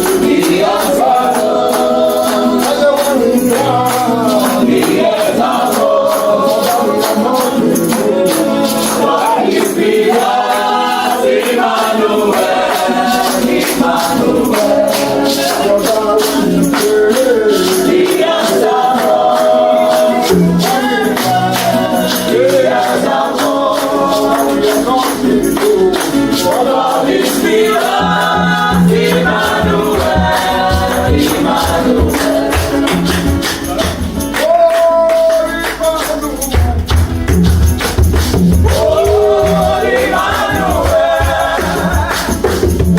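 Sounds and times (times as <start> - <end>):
choir singing: 0.0 - 34.1, 38.6 - 42.9
tambourine rattle: 0.0 - 42.9
bass line: 28.0 - 34.0.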